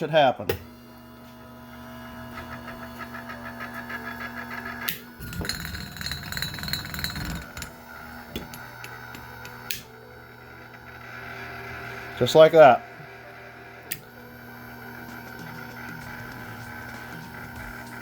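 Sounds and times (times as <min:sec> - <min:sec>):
small electric motor running: 0:00.5 - 0:18.0
background music: 0:07.1 - 0:18.0.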